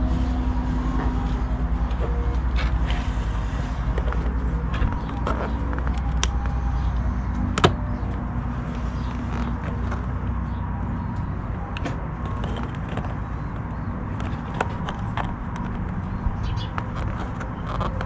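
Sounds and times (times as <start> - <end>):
low rumble: 0.0 - 14.0.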